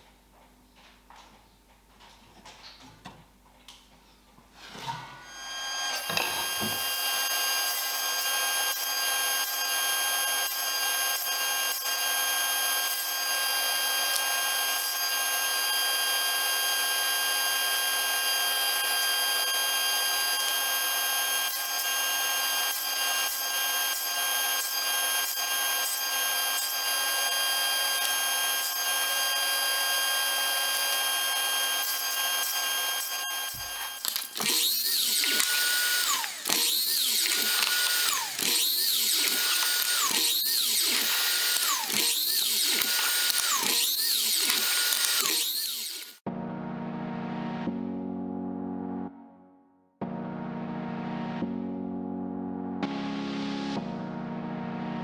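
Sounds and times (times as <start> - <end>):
power tool motor whining: 4.9 - 46.2.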